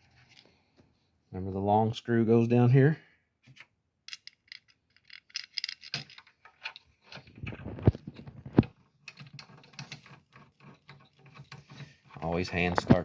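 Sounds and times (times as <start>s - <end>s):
metal screws clinking: 4.1s - 7.4s.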